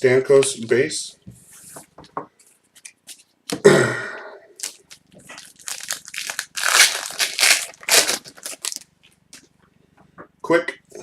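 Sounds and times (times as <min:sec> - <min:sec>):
wrapper tearing and crumpling: 0:04.6 - 0:08.9.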